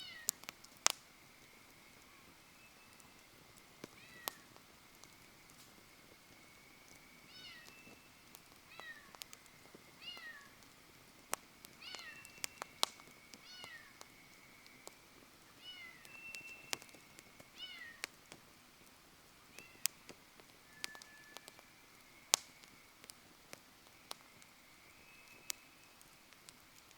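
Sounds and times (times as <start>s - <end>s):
wood fire crackling: 0.0s - 26.9s
thin high whistle: 1.5s - 3.4s, 6.3s - 8.4s, 12.0s - 15.1s, 15.8s - 17.5s, 19.5s - 23.0s, 24.0s - 26.3s
mew-like animal call: 3.9s - 4.6s, 7.2s - 8.0s, 8.6s - 9.3s, 10.0s - 10.6s, 11.8s - 12.7s, 13.3s - 14.0s, 15.6s - 16.9s.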